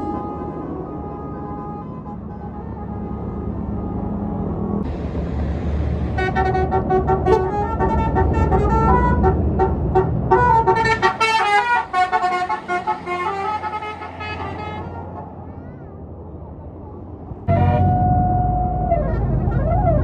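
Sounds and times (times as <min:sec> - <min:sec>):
bus horn playing a tune: 0:00.0 - 0:04.3, 0:06.1 - 0:15.3, 0:17.5 - 0:20.0
bus engine rumble: 0:00.0 - 0:20.0.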